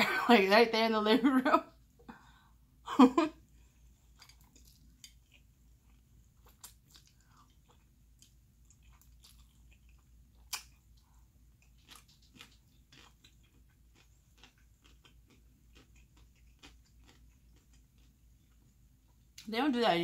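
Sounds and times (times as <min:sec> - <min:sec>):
chewing and biting food: 0:04.0 - 0:19.2.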